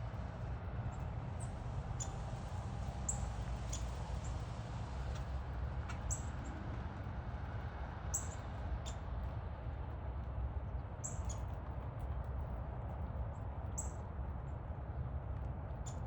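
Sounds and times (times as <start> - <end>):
low background rumble: 0.0 - 16.0.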